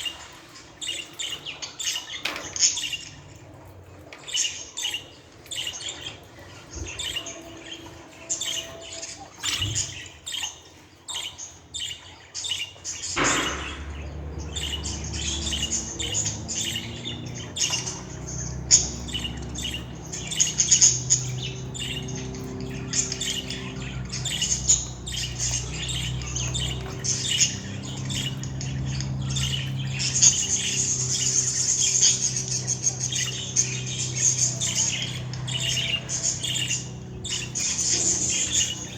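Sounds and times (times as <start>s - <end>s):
budgerigar chirping: 4.3s - 38.9s.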